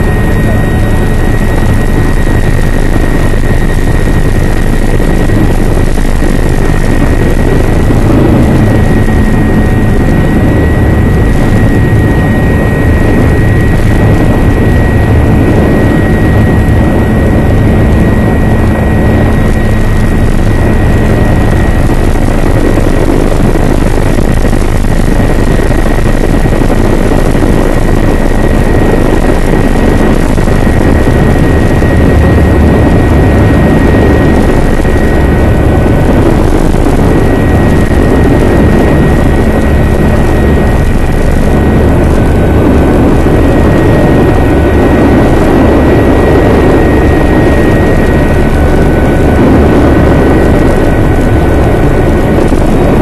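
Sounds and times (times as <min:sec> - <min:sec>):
helicopter engine and rotor: 0:00.0 - 0:53.0.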